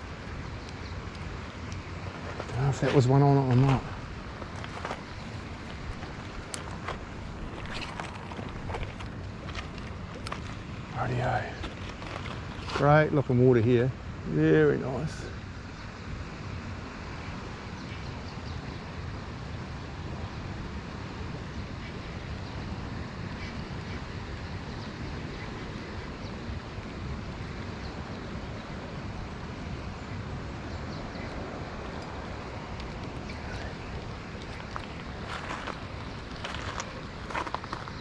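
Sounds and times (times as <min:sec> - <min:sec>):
wind buffeting microphone: 0:00.0 - 0:14.2, 0:22.0 - 0:38.0
river water flowing: 0:00.0 - 0:38.0
crackles: 0:00.6 - 0:12.9, 0:31.9 - 0:38.0.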